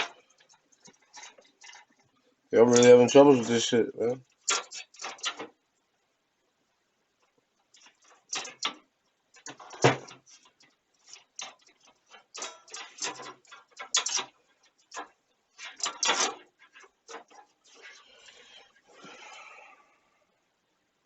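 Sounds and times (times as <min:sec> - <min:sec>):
small hard parts clicking and rattling: 0:00.0 - 0:05.6, 0:07.7 - 0:18.6.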